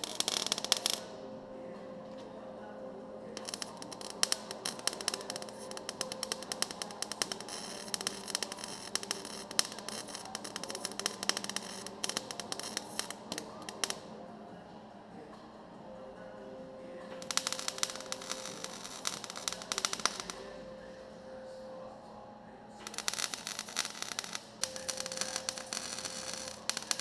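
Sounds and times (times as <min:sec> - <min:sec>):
welding arc crackling: 0:00.0 - 0:01.2, 0:03.4 - 0:14.0, 0:17.2 - 0:20.4, 0:22.9 - 0:27.0.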